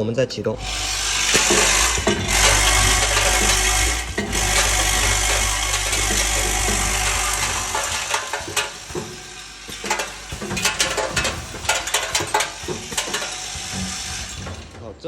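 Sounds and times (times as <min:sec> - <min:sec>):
bowl feeder humming: 0:00.6 - 0:14.8.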